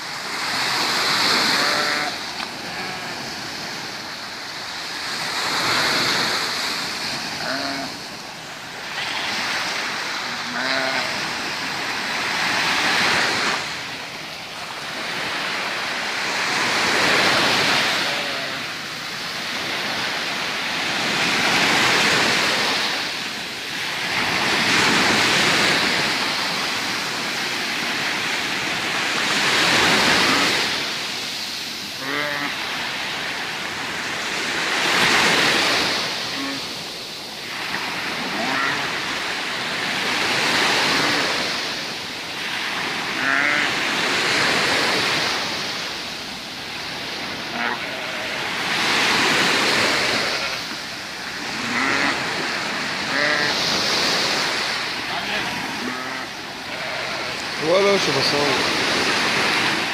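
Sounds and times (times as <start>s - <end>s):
sea waves breaking on shore: 0.0s - 59.9s
goat bleating: 1.4s - 3.2s, 7.4s - 8.0s, 10.3s - 11.2s, 17.9s - 18.6s, 32.0s - 32.6s, 38.3s - 38.9s, 43.2s - 43.8s, 47.5s - 48.5s, 49.8s - 50.8s, 51.6s - 52.2s, 53.0s - 53.6s, 55.1s - 57.5s.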